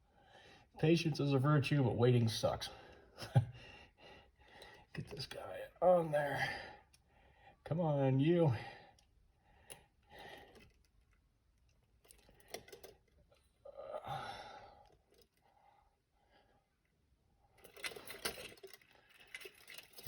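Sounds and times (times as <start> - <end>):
metal chain hardware rattling: 11.8 - 13.4, 17.5 - 20.0.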